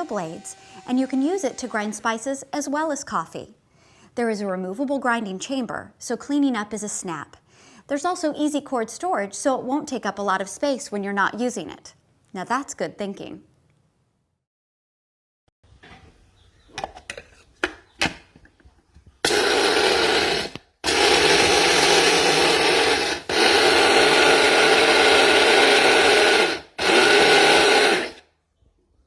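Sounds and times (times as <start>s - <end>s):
electric coffee grinder whirring: 19.3s - 28.2s.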